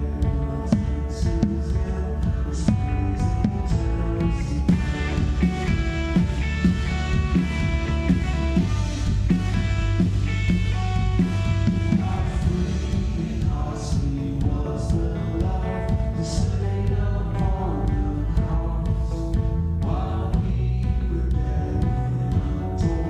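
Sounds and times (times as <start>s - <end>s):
worship band playing: 0.0s - 19.0s
drum kit beat: 0.0s - 23.0s.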